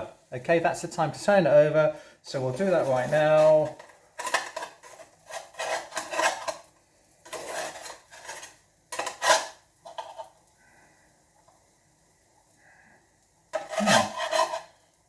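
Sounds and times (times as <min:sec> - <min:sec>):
utensil scraping a frying pan: 0:02.5 - 0:10.4, 0:13.5 - 0:15.0.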